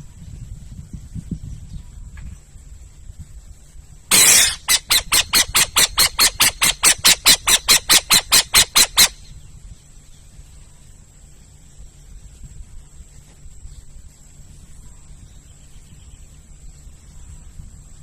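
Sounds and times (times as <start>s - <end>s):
owl screeching: 4.1s - 9.3s.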